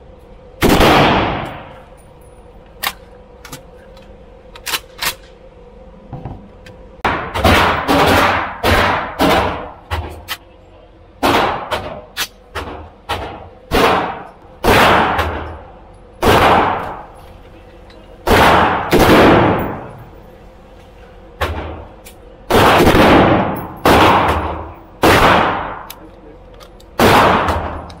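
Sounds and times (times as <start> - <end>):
echoing gunshots: 0.6 - 1.7, 7.0 - 9.8, 11.2 - 12.0, 13.7 - 15.4, 16.2 - 17.0, 18.2 - 19.9, 22.5 - 25.9, 27.0 - 27.9.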